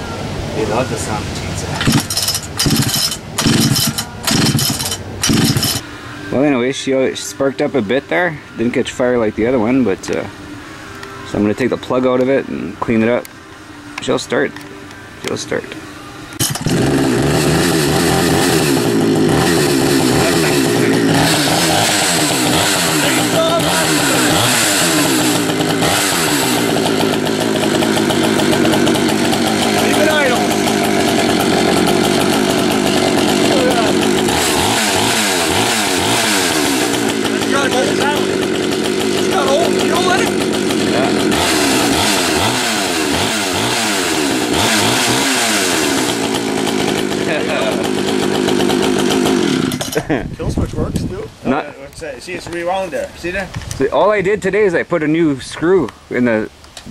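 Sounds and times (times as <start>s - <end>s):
chainsaw engine running: 1.8s - 5.8s, 16.4s - 50.2s.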